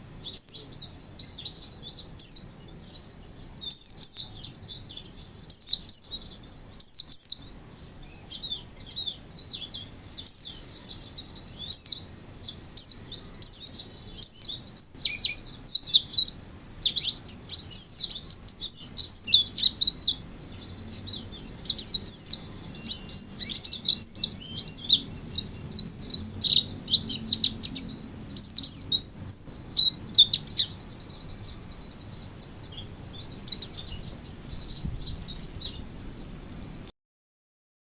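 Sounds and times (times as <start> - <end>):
bird singing trills and chirps: 0.0 - 36.9.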